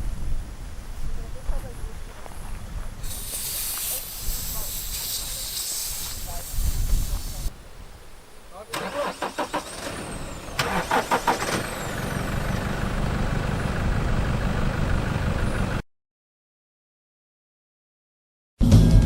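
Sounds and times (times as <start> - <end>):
diesel engine idling: 8.6 - 15.8
starter cranking diesel engine: 8.7 - 15.8.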